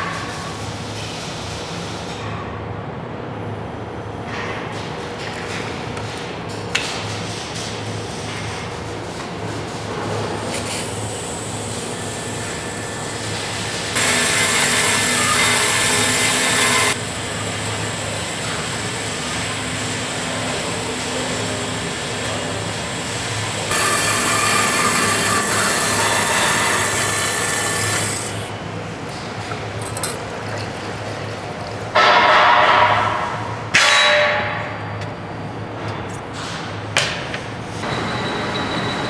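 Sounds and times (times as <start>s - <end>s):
bandsaw cutting metal: 10.6s - 28.6s.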